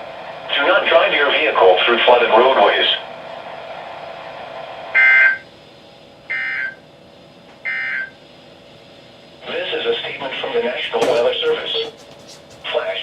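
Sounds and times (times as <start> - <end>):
screeching digital data tones: 5.0 - 5.5, 6.3 - 6.8.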